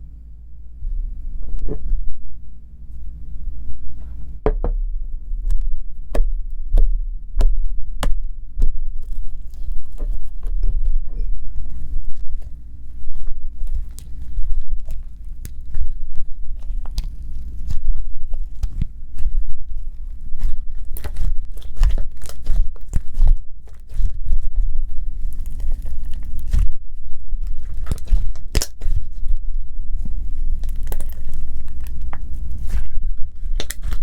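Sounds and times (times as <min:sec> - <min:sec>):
low rumble of handling: 0:00.0 - 0:34.0.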